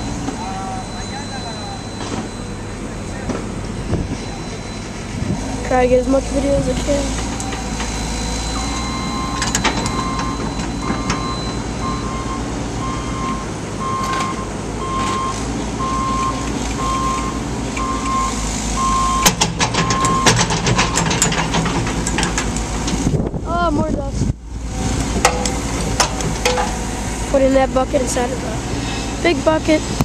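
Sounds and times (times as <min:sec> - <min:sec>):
back-up alarm beeping: 0:00.0 - 0:21.3
diesel machine engine running: 0:00.0 - 0:30.0
sharp clanks and knocks: 0:19.2 - 0:23.1, 0:25.0 - 0:26.8.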